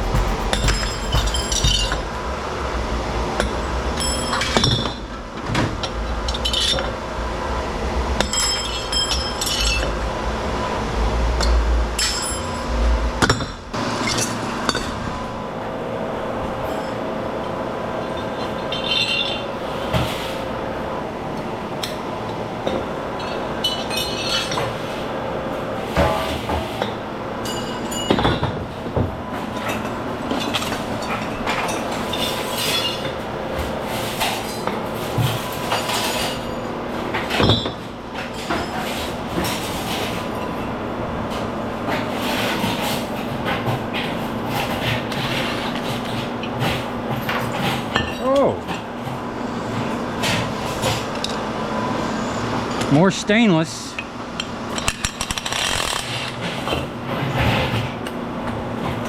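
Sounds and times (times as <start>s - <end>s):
low rumble: 0.0s - 8.2s
steady machine hum: 0.0s - 8.2s.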